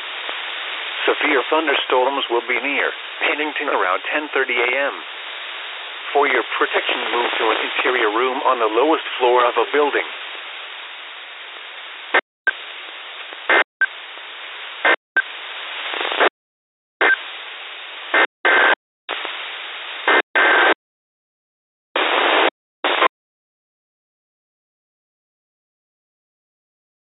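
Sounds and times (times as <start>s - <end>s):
radio static hiss: 0.0s - 16.3s, 17.0s - 20.8s, 22.0s - 23.1s.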